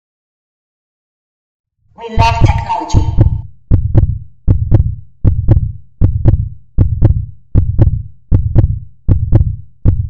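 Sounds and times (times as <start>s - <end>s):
heartbeat thumps: 2.2s - 10.0s.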